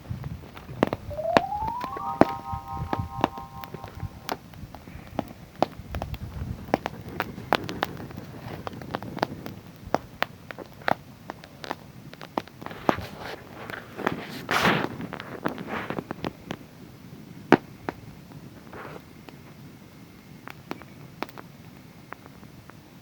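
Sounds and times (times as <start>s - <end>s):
steady multi-pitch tone: 1.1s - 4.4s.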